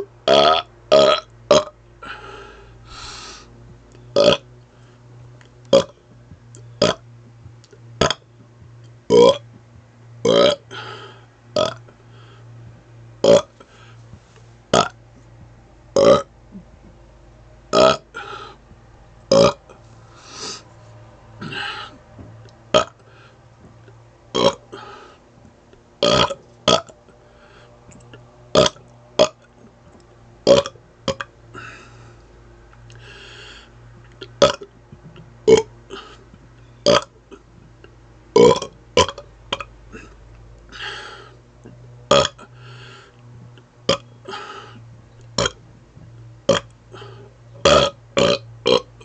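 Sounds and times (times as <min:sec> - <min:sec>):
man burping: 0:00.0 - 0:02.2, 0:04.2 - 0:04.4, 0:05.7 - 0:05.9, 0:09.1 - 0:09.4, 0:10.2 - 0:11.9, 0:13.2 - 0:13.6, 0:14.8 - 0:15.0, 0:16.0 - 0:16.7, 0:17.7 - 0:18.5, 0:19.3 - 0:19.7, 0:21.4 - 0:22.0, 0:22.7 - 0:23.0, 0:24.3 - 0:25.0, 0:26.0 - 0:26.9, 0:34.4 - 0:34.7, 0:35.5 - 0:36.2, 0:36.8 - 0:37.4, 0:38.4 - 0:40.2, 0:40.8 - 0:42.6, 0:45.4 - 0:45.6, 0:46.5 - 0:48.9
quick breaths: 0:02.0 - 0:03.6, 0:13.6 - 0:14.5, 0:18.2 - 0:18.7, 0:19.9 - 0:20.8, 0:23.0 - 0:23.5, 0:27.2 - 0:27.9, 0:33.0 - 0:33.8, 0:40.7 - 0:41.4, 0:42.6 - 0:43.2.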